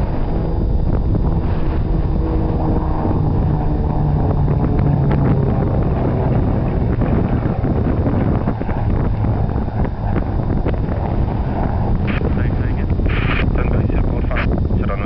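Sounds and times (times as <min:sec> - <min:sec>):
propeller plane flying past: 0:00.0 - 0:15.0
wind buffeting microphone: 0:00.0 - 0:15.0.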